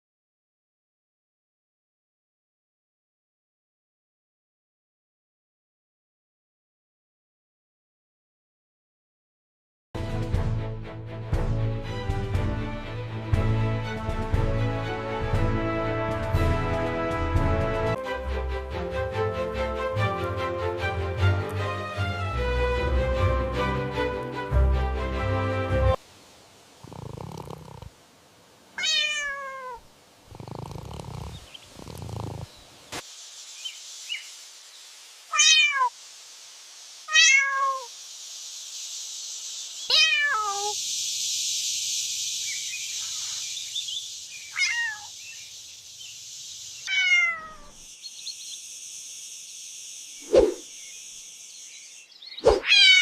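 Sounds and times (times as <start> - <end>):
steady hiss: 25.9 - 29.1, 29.8 - 52.4
cat meowing: 28.8 - 29.9, 35.3 - 35.9, 37.1 - 37.9, 39.9 - 40.8, 44.5 - 45.1, 46.9 - 47.8, 52.6 - 53.0.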